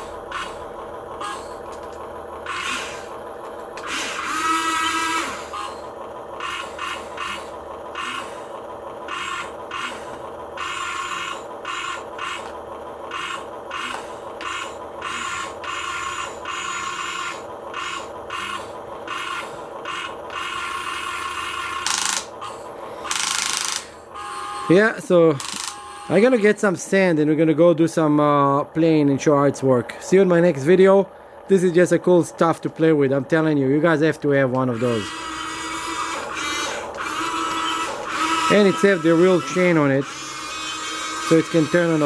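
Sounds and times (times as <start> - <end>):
small electric motors whirring: 0.0 - 26.5, 34.6 - 42.0
ratchety clicking: 21.8 - 22.4, 23.1 - 23.9
rising motor whine: 34.7 - 42.0.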